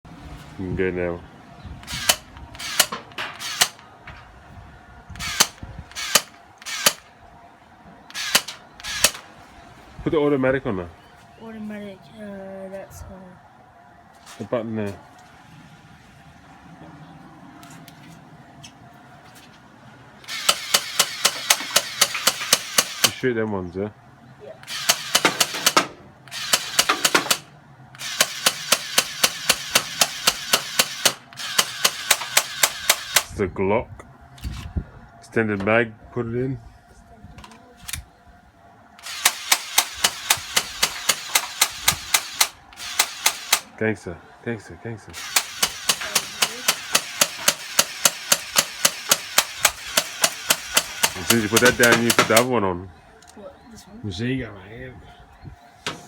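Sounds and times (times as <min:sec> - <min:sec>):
gel blaster firing full auto: 0:20.3 - 0:23.2, 0:24.7 - 0:27.4, 0:28.0 - 0:33.3, 0:39.0 - 0:43.7, 0:45.2 - 0:52.5.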